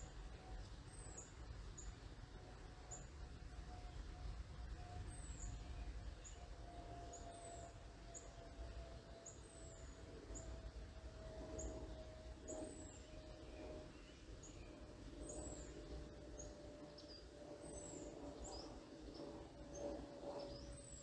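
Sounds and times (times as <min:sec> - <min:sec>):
distant aircraft hum: 0:00.0 - 0:21.0.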